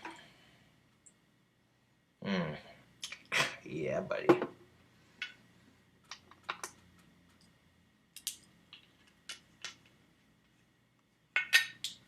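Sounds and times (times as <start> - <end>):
small objects clicking: 8.2 - 10.0.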